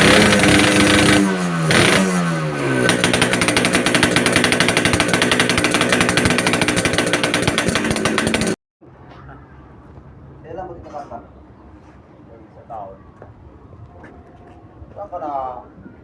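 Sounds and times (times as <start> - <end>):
motorcycle engine popping idle: 0.0 - 8.6.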